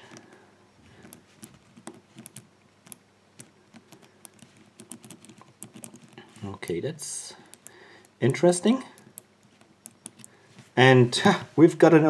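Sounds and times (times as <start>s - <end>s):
padlock wheels clicking: 0.9s - 10.4s.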